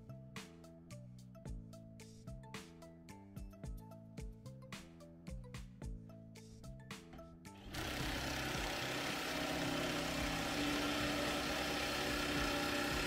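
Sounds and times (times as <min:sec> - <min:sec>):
vehicle engine running: 0:07.6 - 0:13.0.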